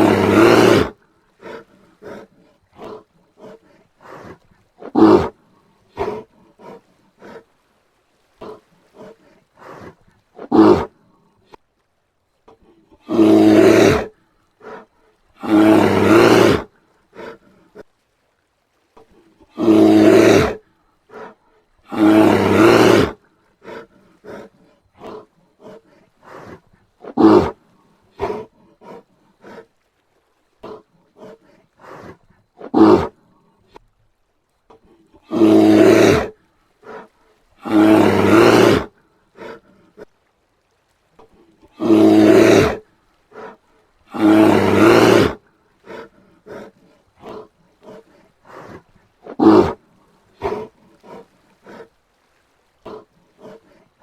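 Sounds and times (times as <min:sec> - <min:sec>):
short sharp bear calls: 0:00.0 - 0:00.9
bear roaring: 0:00.0 - 0:07.5, 0:08.4 - 0:10.9, 0:13.0 - 0:17.8, 0:19.5 - 0:29.7, 0:30.6 - 0:33.2, 0:35.1 - 0:39.8, 0:41.6 - 0:51.9, 0:52.8 - 0:53.8.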